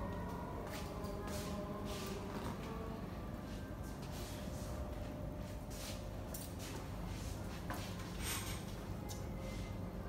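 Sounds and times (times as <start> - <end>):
soft background music: 0.0 - 6.3.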